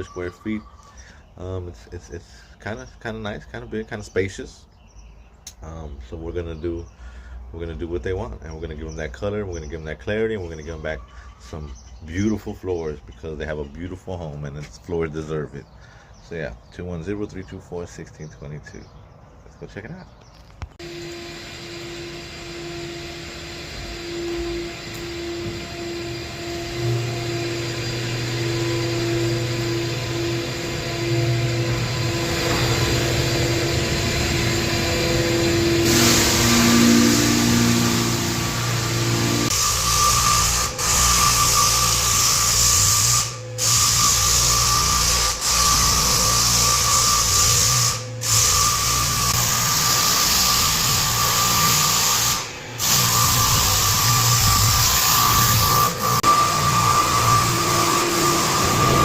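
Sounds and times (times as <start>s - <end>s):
floor sanding machines humming: 20.8s - 59.0s
high steady whine: 20.8s - 59.0s.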